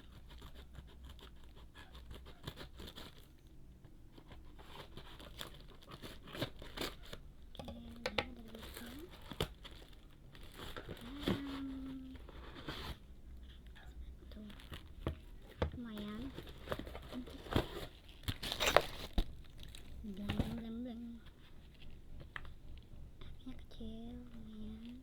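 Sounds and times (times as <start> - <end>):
plastic packaging tearing and crinkling: 4.2 - 7.2, 8.4 - 13.0, 14.4 - 20.5.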